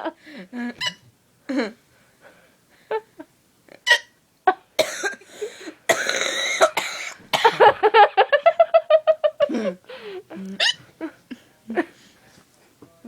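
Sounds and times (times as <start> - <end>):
breathy cough-like burst: 4.8 - 7.6
person giggling: 7.4 - 12.0
person hiccuping: 10.6 - 10.8.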